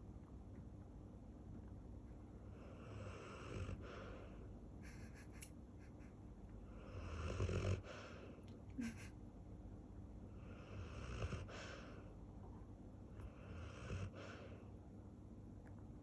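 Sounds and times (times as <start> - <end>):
dog snoring: 2.6 - 4.3, 6.7 - 8.3, 10.3 - 12.1, 13.2 - 14.6.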